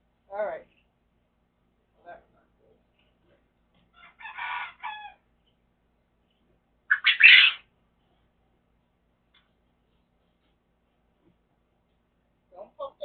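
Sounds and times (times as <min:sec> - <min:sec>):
chicken squawking: 0:04.0 - 0:05.2, 0:06.9 - 0:07.7.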